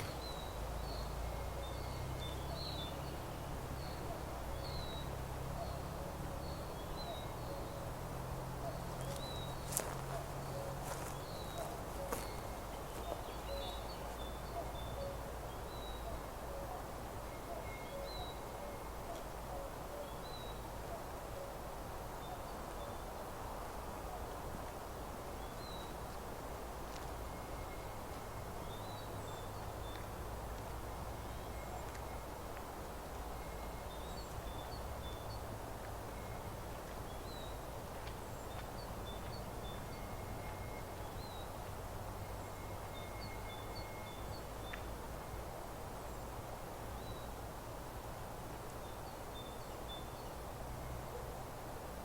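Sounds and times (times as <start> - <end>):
small birds chirping: 0.0 - 8.0, 8.6 - 19.3
steady outdoor hiss: 0.0 - 52.0
cuckoo calling: 10.5 - 15.3.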